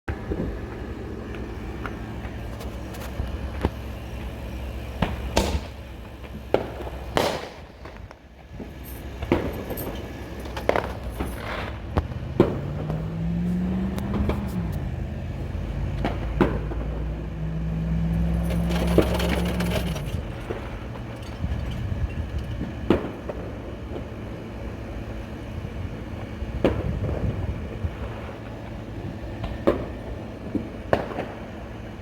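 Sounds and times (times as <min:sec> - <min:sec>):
fireworks cracks and bangs: 0:00.1 - 0:13.1, 0:16.0 - 0:17.2, 0:22.6 - 0:24.3, 0:29.4 - 0:31.7
low rumble: 0:00.1 - 0:23.6
droning hum: 0:00.1 - 0:32.0.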